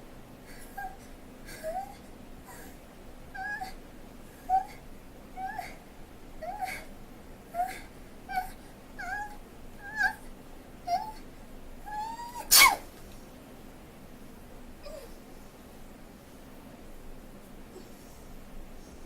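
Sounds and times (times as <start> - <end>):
woman's squeaky hitching breaths: 0.5 - 4.8, 6.4 - 6.9
woman sneezing: 12.5 - 12.9.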